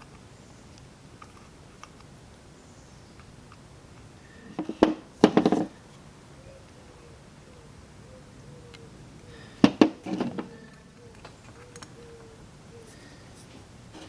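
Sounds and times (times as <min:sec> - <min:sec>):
metallic clattering and knocking: 0:04.6 - 0:05.7, 0:09.6 - 0:10.7
light metal clicks: 0:10.0 - 0:12.3.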